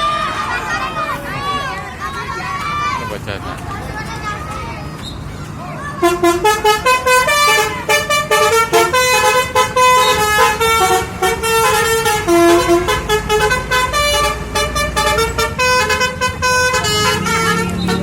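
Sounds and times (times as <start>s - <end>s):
musical bus horn melody: 6.0s - 18.0s.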